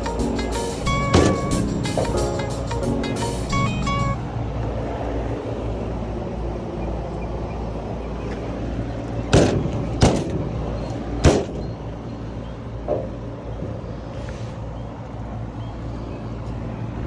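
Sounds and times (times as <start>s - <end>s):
low mechanical hum: 0.0s - 17.0s
sharp knocks: 0.9s - 2.3s, 9.3s - 10.4s, 11.2s - 11.7s.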